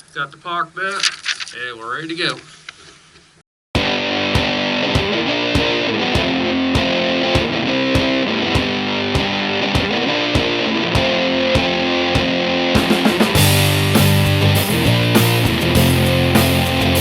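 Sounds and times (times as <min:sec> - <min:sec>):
distorted electric guitar: 0:03.8 - 0:17.0
steady drum beat: 0:05.0 - 0:17.0.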